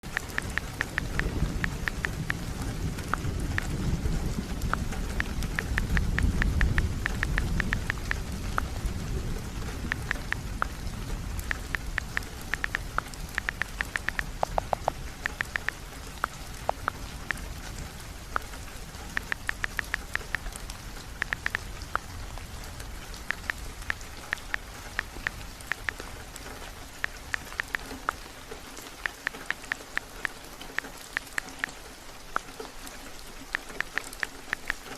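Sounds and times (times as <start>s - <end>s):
sharp little ticks: 0.0s - 3.9s, 4.5s - 8.9s, 9.6s - 17.6s, 18.3s - 22.2s, 23.1s - 32.7s, 33.4s - 34.9s
heavy rain falling: 0.0s - 34.9s
rolling thunder rumble: 0.5s - 19.2s.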